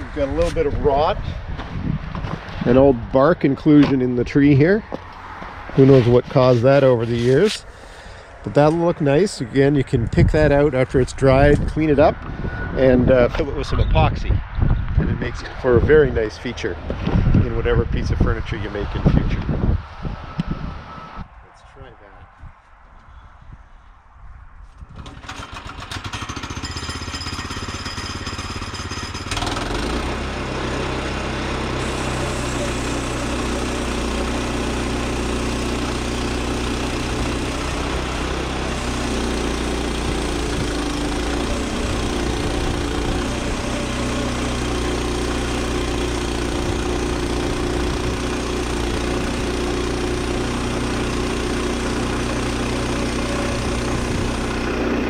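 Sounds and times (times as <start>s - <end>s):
sawmill engine running: 2.4s - 12.3s, 25.0s - 55.0s
band saw cutting log: 4.8s - 12.0s, 25.0s - 55.0s.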